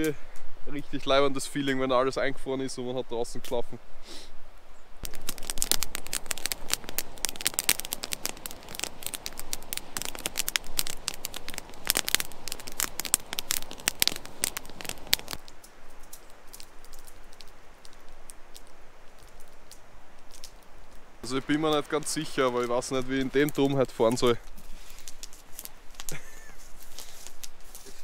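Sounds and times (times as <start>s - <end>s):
campfire crackling: 0.0s - 28.0s.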